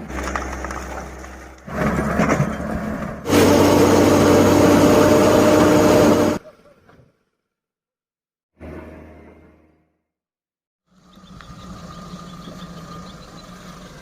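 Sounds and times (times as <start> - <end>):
heavy diesel engines running: 0.0 - 6.4, 11.0 - 14.0.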